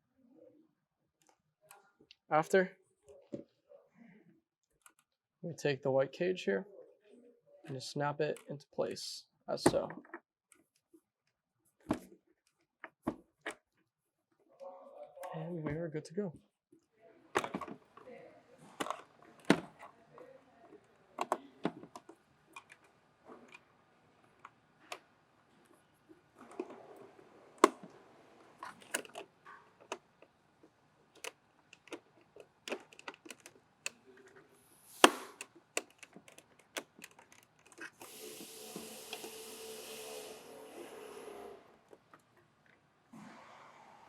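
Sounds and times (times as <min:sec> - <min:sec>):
plastic and metal parts clicking: 0:18.7 - 0:23.7, 0:28.6 - 0:38.1
steady hiss: 0:38.0 - 0:41.8.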